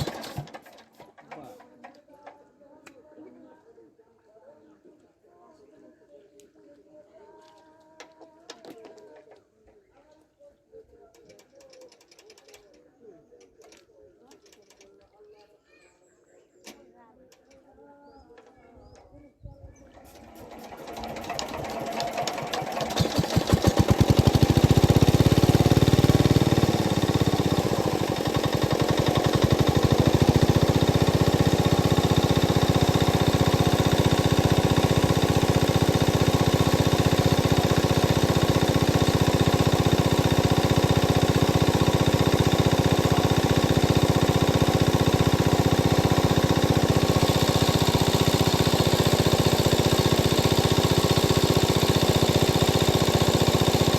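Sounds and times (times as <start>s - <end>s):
small engine chugging: 0.0s - 1.7s, 19.9s - 53.9s.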